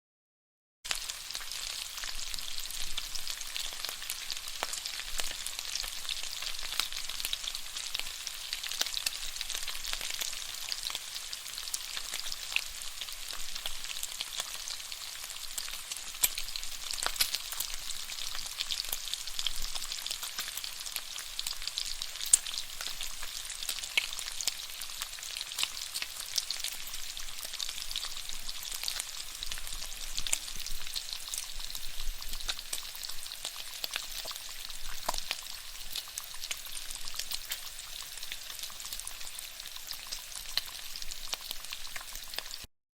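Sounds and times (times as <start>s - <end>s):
bacon sizzling in a pan: 0.9s - 42.7s
fat crackling and popping: 15.5s - 24.5s, 25.4s - 38.3s.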